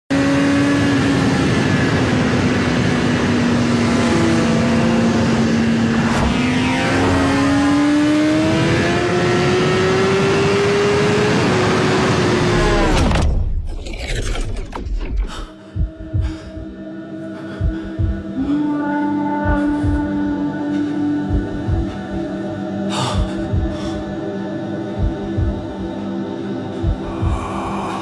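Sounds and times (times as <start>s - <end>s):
road noise: 0.1s - 13.0s
car engine at speed: 0.1s - 14.3s.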